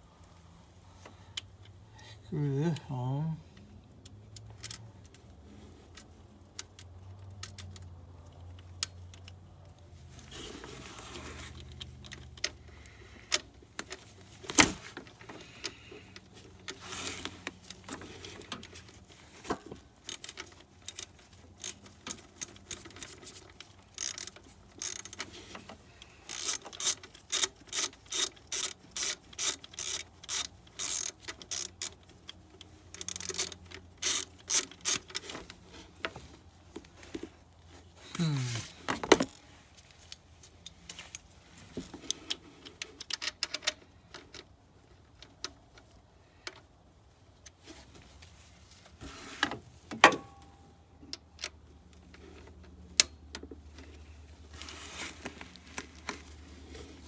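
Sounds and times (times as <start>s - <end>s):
ratchet wrench clicking: 20.1s - 23.1s, 24.0s - 25.2s, 26.2s - 32.0s, 32.9s - 35.2s.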